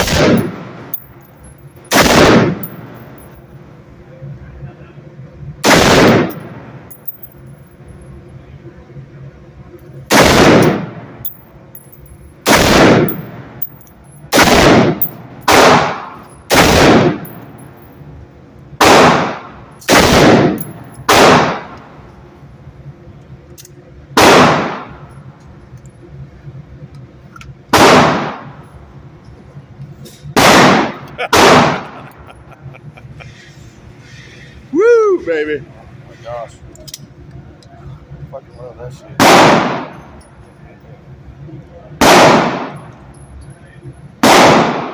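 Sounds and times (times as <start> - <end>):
gunshots with echo: 0.0 - 0.7, 1.9 - 2.6, 5.6 - 6.4, 10.1 - 10.9, 14.3 - 17.2, 18.8 - 21.7, 30.4 - 32.0, 42.0 - 42.8, 44.2 - 44.9.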